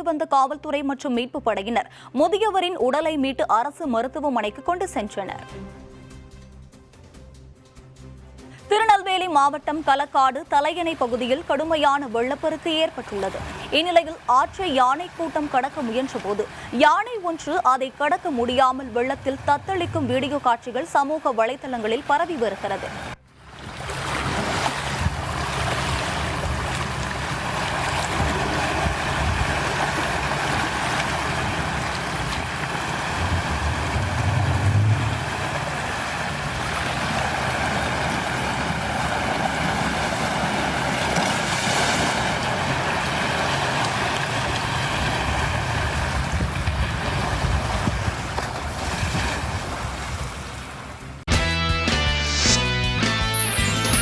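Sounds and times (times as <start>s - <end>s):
flooded river rushing: 22.8s - 51.2s
wind buffeting microphone: 27.4s - 36.8s, 44.7s - 50.4s.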